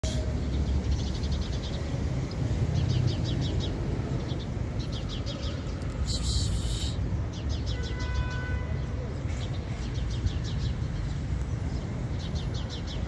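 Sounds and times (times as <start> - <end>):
small bird chirping: 5.9 - 7.0.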